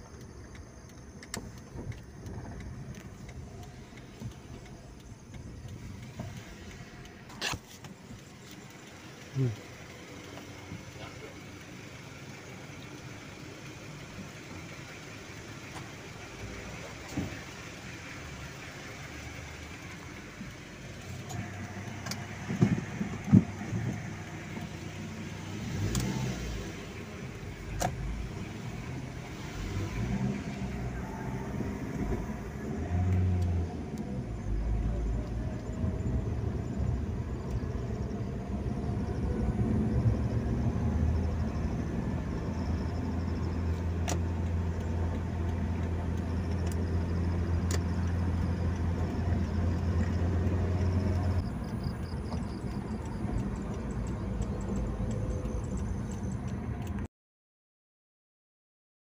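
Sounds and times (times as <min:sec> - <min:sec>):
vehicle engine humming: 0:00.0 - 0:57.1.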